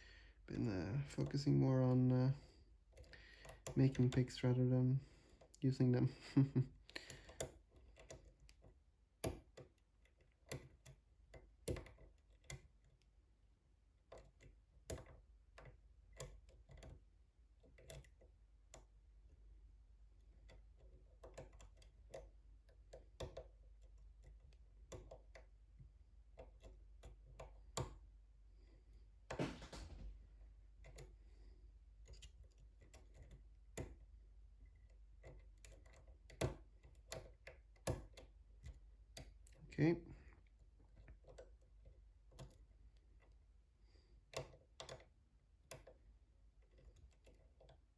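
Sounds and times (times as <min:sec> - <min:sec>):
lock pick clicking in lock: 0:06.9 - 0:13.0, 0:14.1 - 0:17.0, 0:17.6 - 0:18.8, 0:44.3 - 0:45.1.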